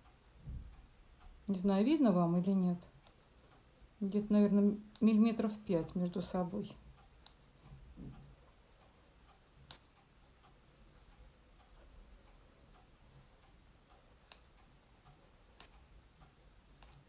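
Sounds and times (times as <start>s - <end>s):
scissors snipping wool: 2.8s - 3.3s, 4.1s - 7.6s, 9.4s - 10.0s, 14.0s - 14.6s, 15.2s - 15.9s, 16.6s - 17.0s.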